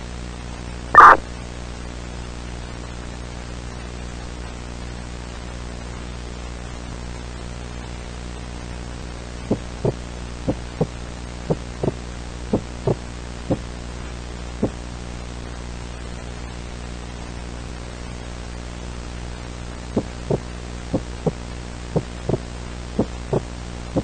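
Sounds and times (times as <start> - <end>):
low electrical hum: 0.0 - 24.0
heartbeat thumps: 9.5 - 13.7, 22.0 - 24.0.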